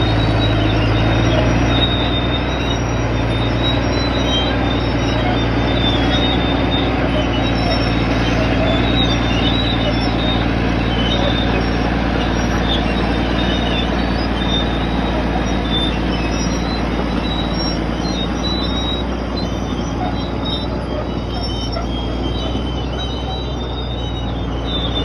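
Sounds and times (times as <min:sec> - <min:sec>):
bulldozer diesel engine running: 0:00.0 - 0:25.0
high-pitched squeaks: 0:00.0 - 0:25.0.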